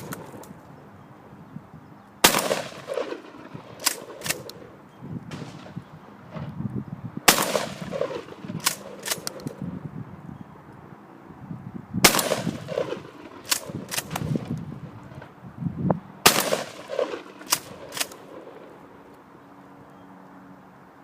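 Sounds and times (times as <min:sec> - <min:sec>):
faint gunshots: 0:02.2 - 0:04.7, 0:07.3 - 0:09.6, 0:12.0 - 0:14.5, 0:16.2 - 0:18.7
loud gunshots with echo: 0:02.2 - 0:04.7, 0:07.3 - 0:09.5, 0:12.0 - 0:14.5, 0:16.2 - 0:18.6.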